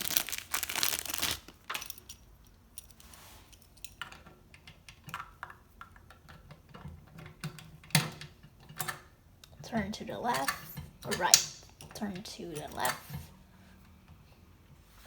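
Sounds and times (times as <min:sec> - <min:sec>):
plastic packaging crinkling: 0:00.0 - 0:01.7
keys clicking and jingling: 0:01.6 - 0:04.2, 0:10.1 - 0:13.2.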